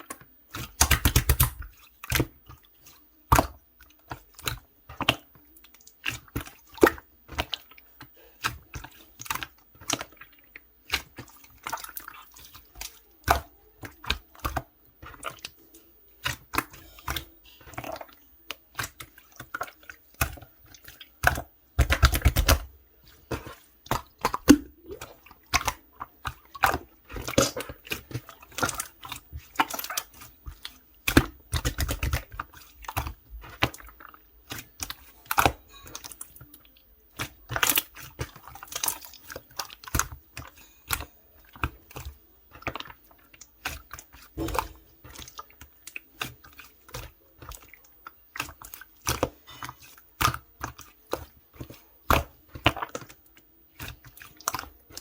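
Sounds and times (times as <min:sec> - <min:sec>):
deep slime squelches: 0:00.0 - 0:55.0
small air-bubble pops: 0:24.3 - 0:25.0.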